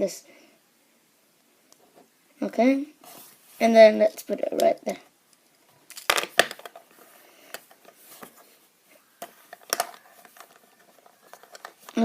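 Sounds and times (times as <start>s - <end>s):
plastic bricks clicking: 9.2s - 12.0s.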